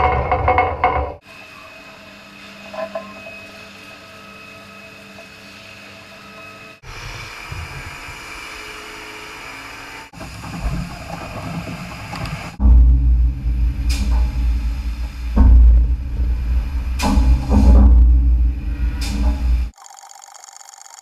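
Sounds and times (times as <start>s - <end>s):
milking machinery hum: 1.2s - 12.6s, 19.0s - 21.0s.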